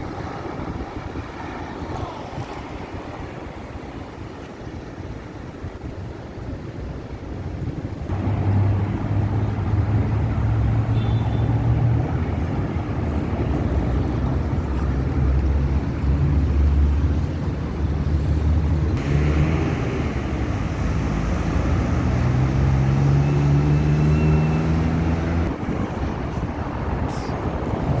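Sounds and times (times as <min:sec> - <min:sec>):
vehicle accelerating: 0:08.1 - 0:25.8
car engines passing: 0:08.1 - 0:28.0.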